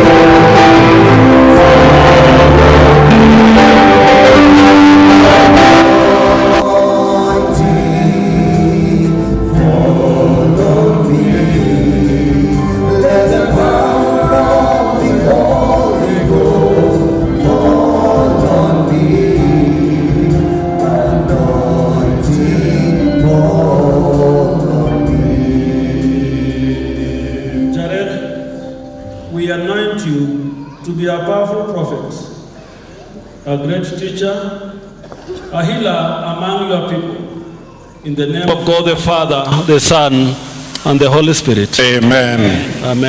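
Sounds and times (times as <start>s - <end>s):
accompaniment with steady beat: 0.0s - 29.2s
choir singing gospel song: 0.0s - 29.3s.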